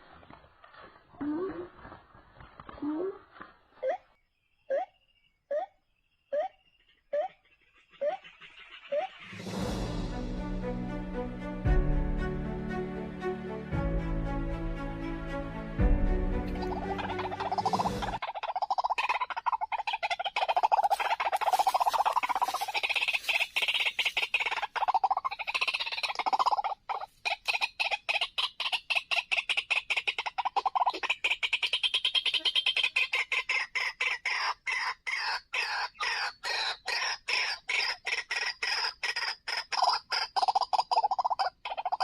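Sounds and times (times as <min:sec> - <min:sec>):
bird calling harsh repeated notes: 0:16.5 - 0:42.0.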